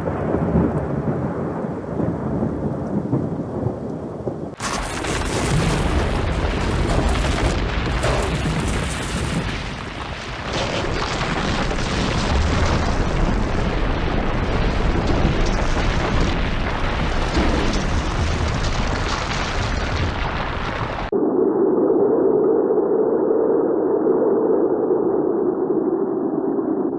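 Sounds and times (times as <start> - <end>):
deep rumbling roar with crackle: 0.0 - 26.9.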